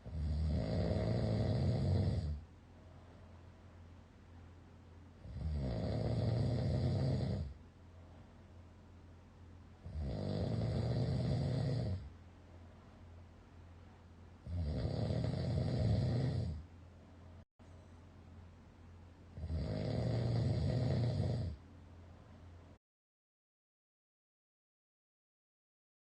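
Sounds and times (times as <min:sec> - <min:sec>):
person snoring loudly: 0:00.0 - 0:02.4, 0:05.2 - 0:07.6, 0:09.8 - 0:12.1, 0:14.4 - 0:16.6, 0:19.3 - 0:21.6
quiet breathing: 0:00.0 - 0:09.1, 0:09.7 - 0:18.2, 0:19.2 - 0:22.8.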